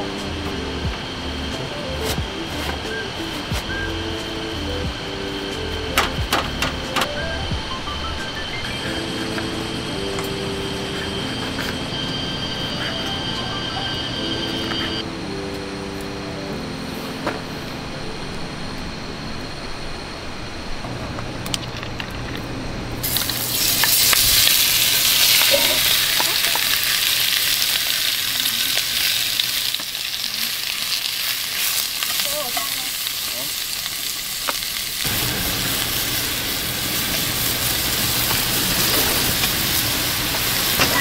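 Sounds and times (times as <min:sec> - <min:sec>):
food sizzling in hot oil: 0:23.0 - 0:41.0.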